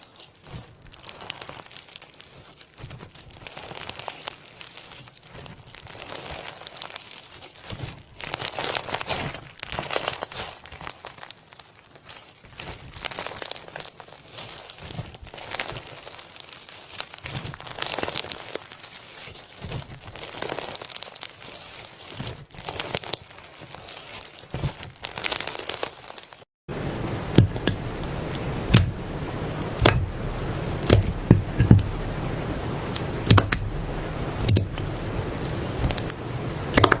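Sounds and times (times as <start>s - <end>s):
slime crinkling and squishing: 0.0s - 26.4s, 27.4s - 37.0s
slime popping and clicking: 27.4s - 37.0s.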